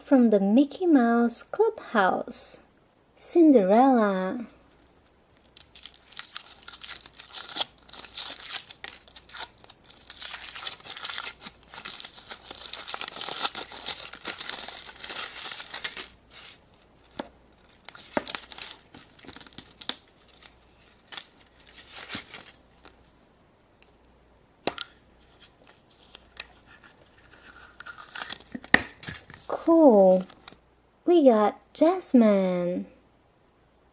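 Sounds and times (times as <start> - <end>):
wrapper crinkling and tearing: 4.7 - 23.1, 25.7 - 30.6.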